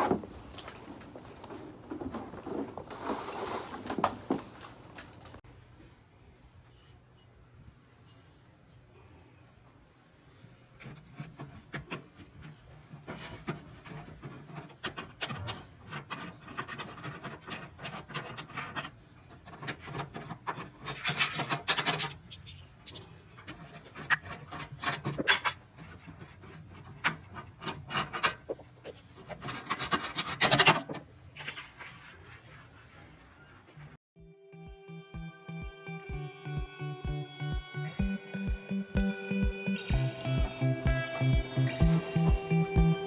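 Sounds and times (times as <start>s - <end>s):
scraping and rubbing: 0.0s - 5.4s, 10.7s - 34.0s, 40.2s - 43.0s.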